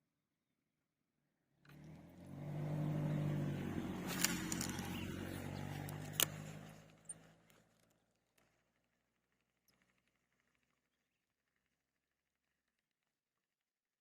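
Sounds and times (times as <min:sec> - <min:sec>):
vehicle engine passing by: 0:01.7 - 0:07.7
sharp clicks: 0:04.0 - 0:07.2.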